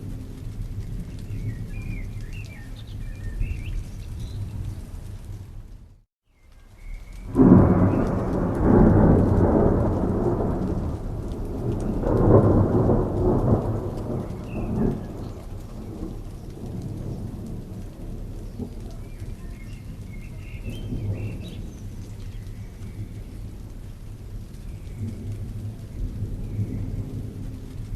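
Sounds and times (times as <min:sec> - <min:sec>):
steady rain: 0:00.0 - 0:27.9
thunder rolling: 0:07.2 - 0:27.9.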